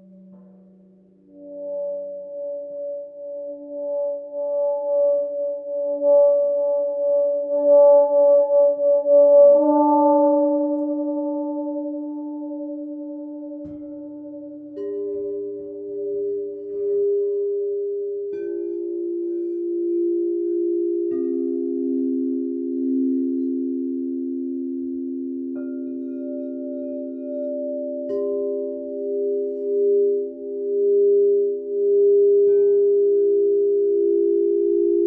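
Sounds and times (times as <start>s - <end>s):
singing bowls ringing: 0.0s - 35.0s.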